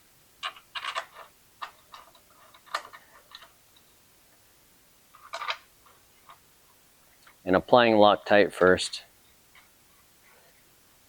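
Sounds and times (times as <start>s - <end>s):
light clicks and knocks of metal parts: 0.4s - 4.0s.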